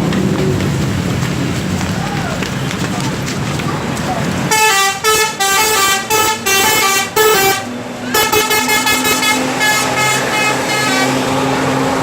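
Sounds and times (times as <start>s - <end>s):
bus musical horn tune: 4.5s - 11.4s.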